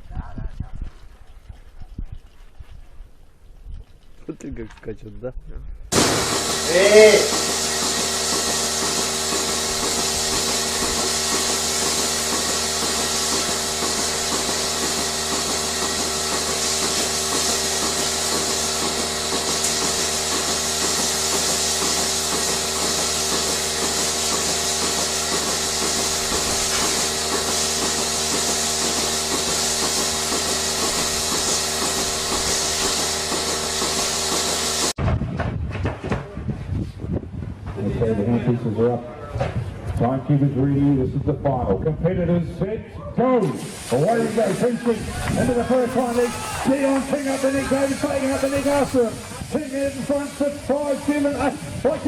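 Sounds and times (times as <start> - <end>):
machine hum with hiss and flutter: 5.9 - 35.0, 45.4 - 49.4.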